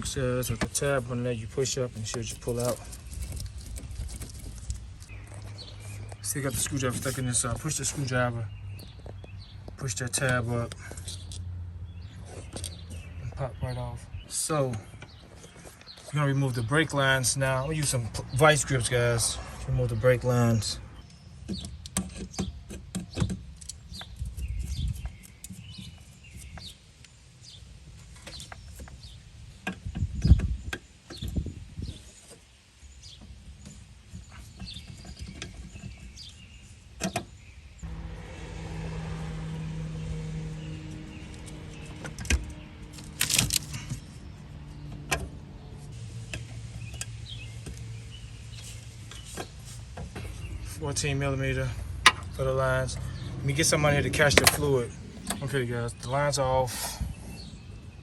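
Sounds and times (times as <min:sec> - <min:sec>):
hand tools clanking on metal fittings: 0:53.6 - 0:55.5.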